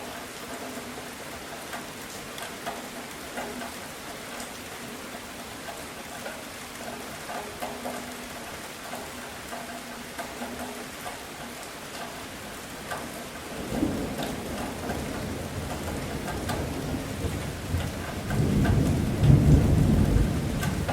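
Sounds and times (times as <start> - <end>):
raindrops ticking: 0.0 - 20.9
steady rain falling: 0.0 - 20.9
thunder rumbling: 13.6 - 20.9.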